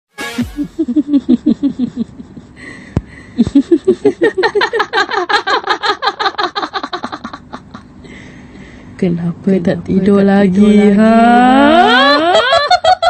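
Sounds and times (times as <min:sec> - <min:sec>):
evil horror laugh: 0:00.4 - 0:08.0, 0:10.7 - 0:13.0.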